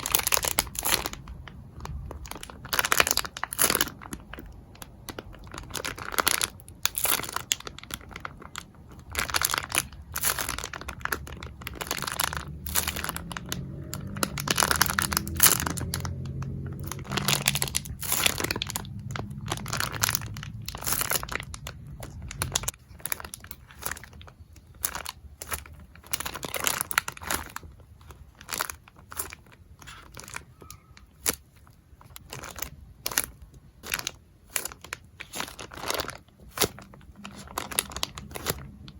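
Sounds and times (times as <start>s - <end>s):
plastic packaging crinkling and tearing: 0.0s - 38.9s
low hum: 8.1s - 22.8s.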